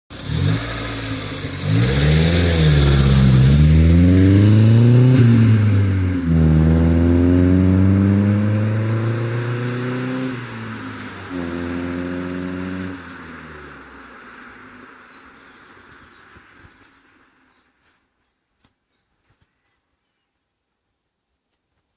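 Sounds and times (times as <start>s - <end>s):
car engine and exhaust revving: 0.1s - 17.3s.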